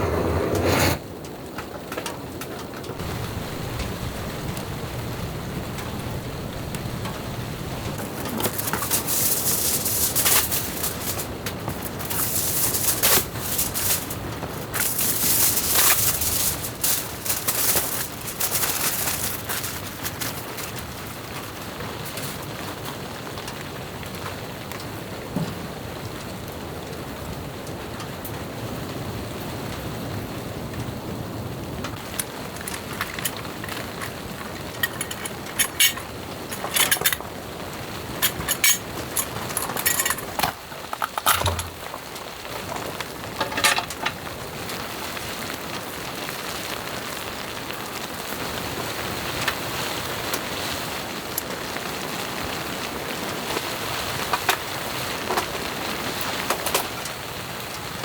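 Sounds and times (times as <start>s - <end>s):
hiss of falling precipitation: 1.4s - 58.0s
sharp clicks and knocks: 38.2s - 42.1s.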